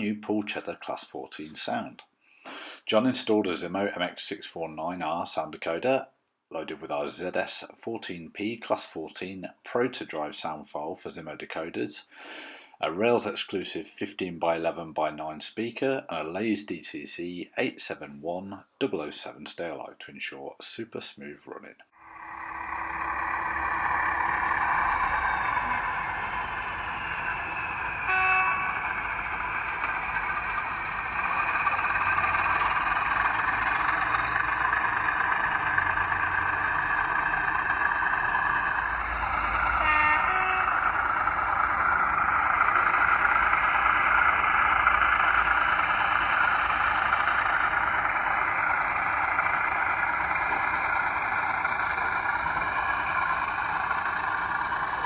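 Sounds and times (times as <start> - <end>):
diesel locomotive engine running: 2.5 - 3.9, 22.0 - 55.0
locomotive horn blasts: 28.0 - 29.0, 39.8 - 41.0.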